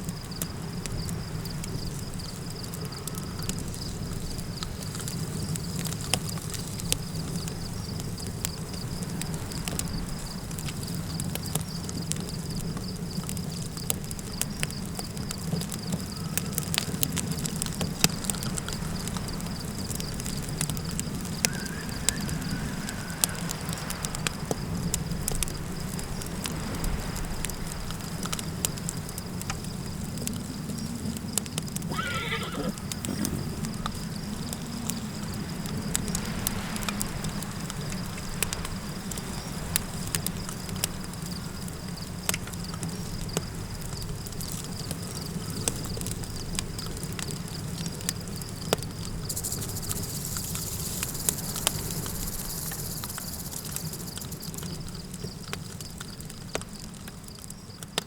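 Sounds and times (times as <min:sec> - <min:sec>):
campfire crackling: 0:00.0 - 0:58.0
high hiss: 0:20.4 - 0:28.6, 0:31.8 - 0:40.1, 0:49.1 - 0:55.0
horse whinnying: 0:31.9 - 0:33.6.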